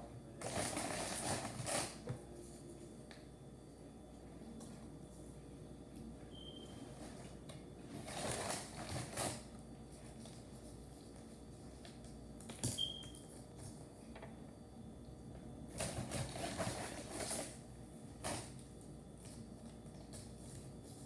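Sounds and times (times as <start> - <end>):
brief high squeak: 6.3 - 6.8.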